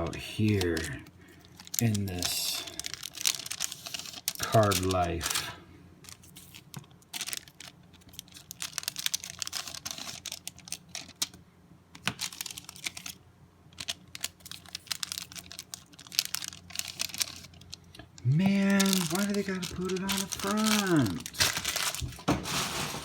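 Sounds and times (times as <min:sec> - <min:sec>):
cards flipping and rustling: 0:00.0 - 0:07.4, 0:13.8 - 0:23.0.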